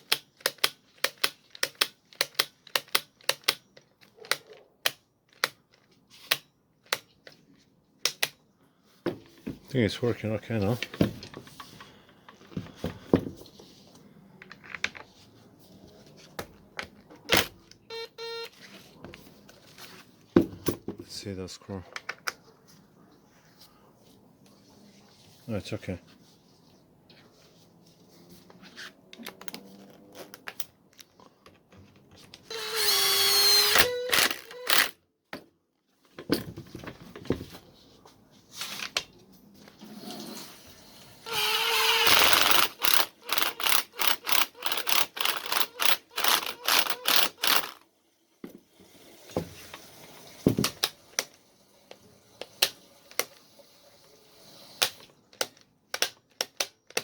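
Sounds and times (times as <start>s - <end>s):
tool handling clicks and knocks: 10.6s - 15.2s, 42.1s - 47.8s, 54.8s - 57.0s
angle grinder motor spinning: 32.5s - 34.9s, 41.2s - 47.8s.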